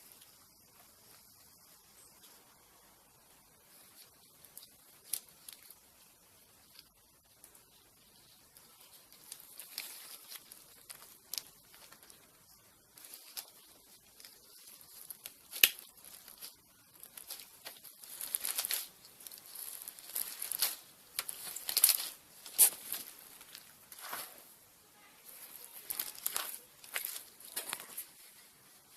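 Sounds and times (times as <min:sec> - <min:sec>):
slime crackling and popping: 0:08.5 - 0:12.2, 0:13.0 - 0:24.1, 0:25.6 - 0:28.0.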